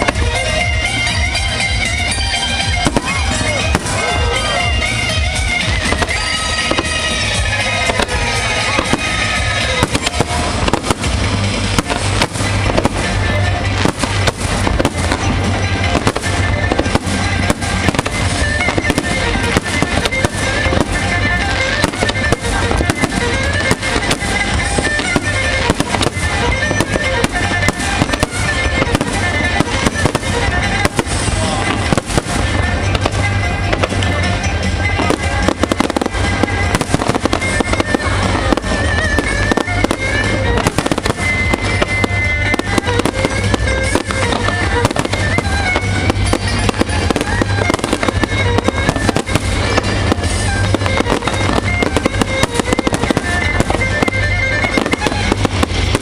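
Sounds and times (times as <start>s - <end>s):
fireworks bangs and crackles: 0.0s - 56.0s
fireworks whistles: 0.0s - 56.0s
music: 0.0s - 56.0s.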